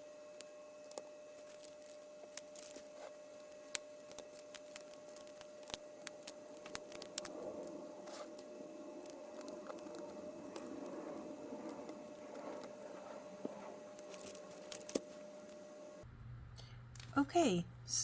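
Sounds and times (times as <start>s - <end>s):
faint steady hum: 0.0s - 18.0s
soft handling rustle: 0.3s - 15.8s.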